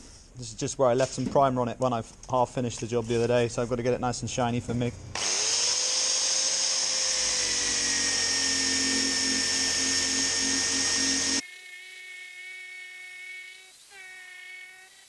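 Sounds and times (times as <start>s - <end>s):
power tool whining: 5.2s - 15.0s.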